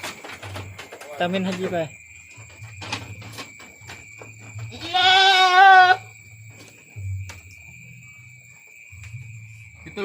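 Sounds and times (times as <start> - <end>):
goat bleating: 4.6 - 6.1.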